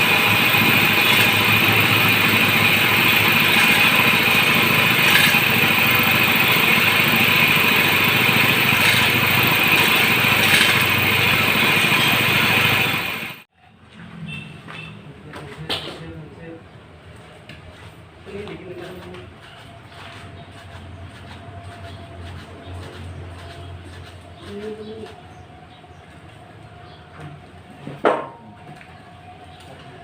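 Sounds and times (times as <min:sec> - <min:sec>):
drilling machine engine running: 0:00.0 - 0:13.5.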